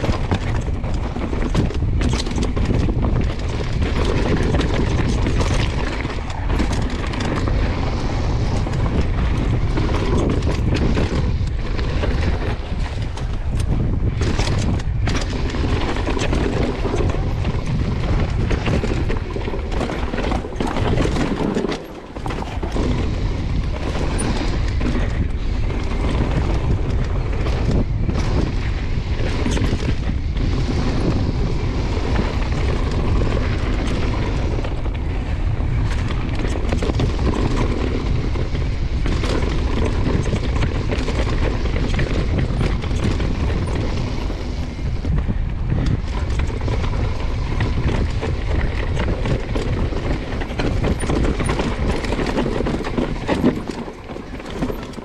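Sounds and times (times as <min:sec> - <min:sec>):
bike rattling knocks: 0:00.0 - 0:25.3, 0:49.6 - 0:55.0
wind buffeting microphone: 0:00.0 - 0:55.0.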